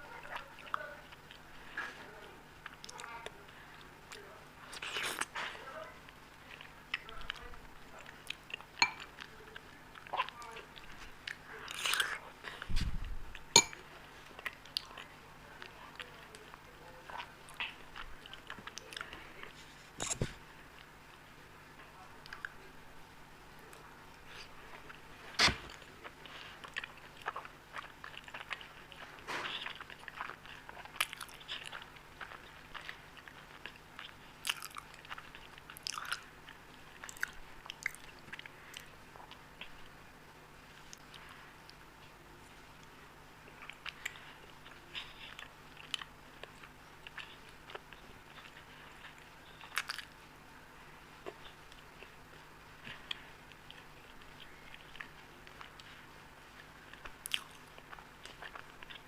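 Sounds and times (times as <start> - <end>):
wet chewing and mouth smacks: 23.7 - 40.0, 40.7 - 50.3, 51.2 - 59.0.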